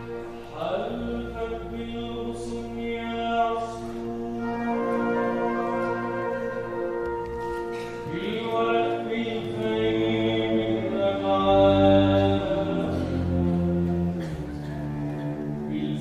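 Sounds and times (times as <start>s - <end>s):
man singing long notes: 0.0s - 7.3s, 7.9s - 16.0s
instrumental ensemble: 0.0s - 16.0s.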